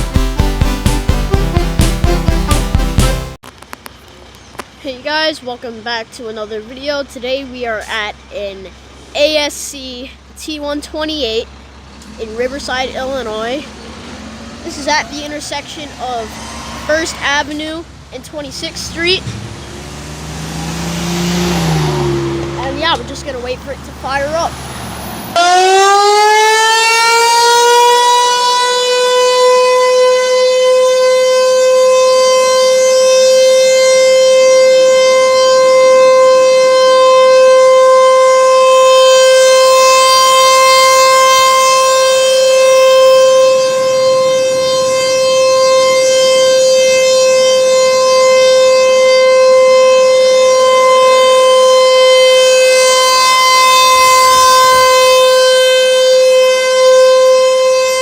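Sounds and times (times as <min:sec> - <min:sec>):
warning siren winding up: 0:25.4 - 0:58.0.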